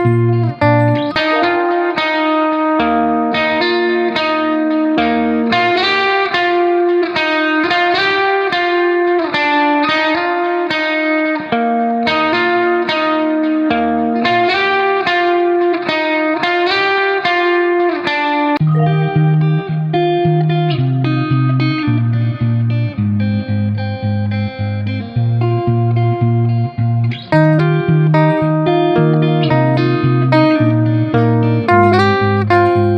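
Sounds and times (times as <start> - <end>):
plucked guitar melody: 0.0 - 32.9.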